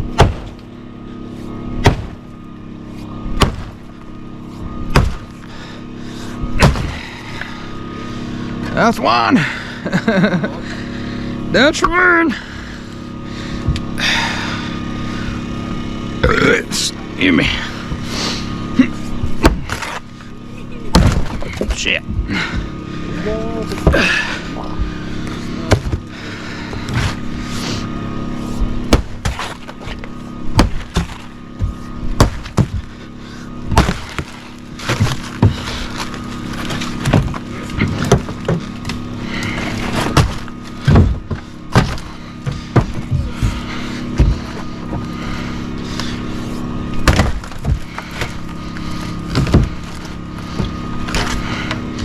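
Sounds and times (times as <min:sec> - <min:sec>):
wood being struck and broken: 0:00.0 - 0:00.7, 0:01.7 - 0:02.4, 0:03.3 - 0:05.7, 0:06.4 - 0:07.5, 0:19.2 - 0:20.1, 0:20.9 - 0:22.9, 0:23.8 - 0:27.3, 0:28.1 - 0:52.0
steady low hum: 0:00.0 - 0:52.0
wood knocking and cracking: 0:01.8 - 0:02.3, 0:03.4 - 0:03.8, 0:04.9 - 0:05.4, 0:06.6 - 0:07.1, 0:20.9 - 0:22.7, 0:28.9 - 0:33.0, 0:33.7 - 0:45.2, 0:46.9 - 0:52.0.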